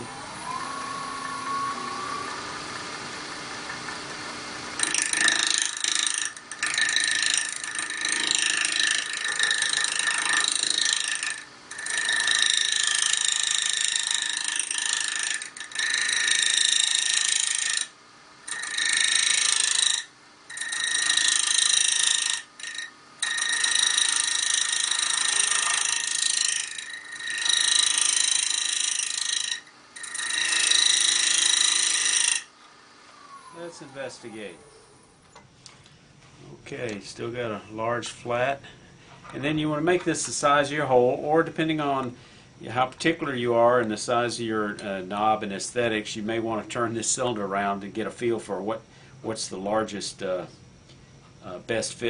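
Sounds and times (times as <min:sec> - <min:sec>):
wood lathe running: 0:00.0 - 0:32.5
scraper scraping spinning bone: 0:04.8 - 0:17.9, 0:18.5 - 0:32.5.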